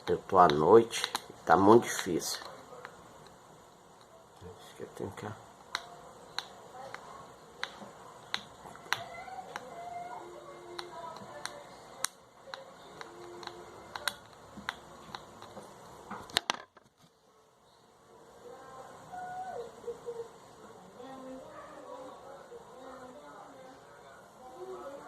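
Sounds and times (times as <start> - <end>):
sharp clicks and taps of handling: 0.4 - 1.3, 10.7 - 17.1.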